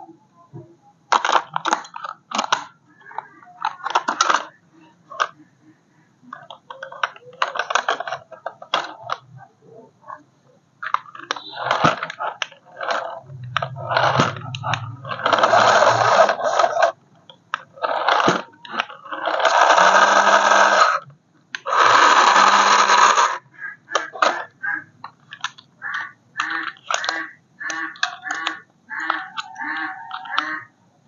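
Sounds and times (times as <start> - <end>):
toy clicks and rattles: 1.1 - 2.8, 3.6 - 5.4, 6.3 - 9.3, 10.8 - 24.5, 26.4 - 30.6
toy car motor whirring: 6.4 - 9.2, 10.9 - 17.0, 17.8 - 23.4.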